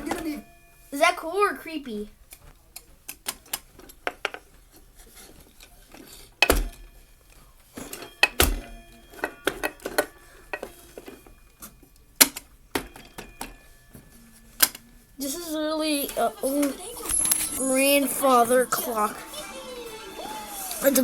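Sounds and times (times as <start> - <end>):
knocks and metallic clinks: 5.2 - 19.3.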